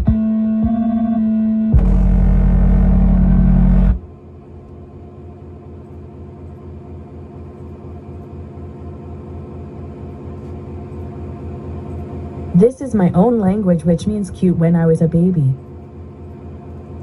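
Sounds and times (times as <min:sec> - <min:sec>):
loud low bass chord: 0:00.0 - 0:04.1
low pulsing rumble: 0:01.6 - 0:05.0.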